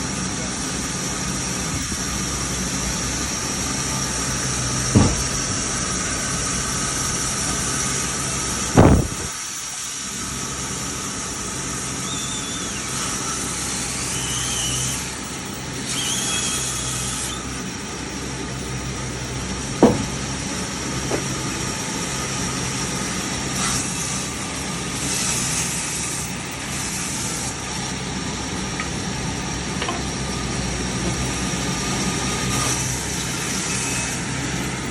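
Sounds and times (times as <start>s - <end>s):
engine idling: 0.0s - 34.9s
sharp thuds: 4.9s - 5.5s, 8.8s - 9.3s, 19.8s - 20.2s.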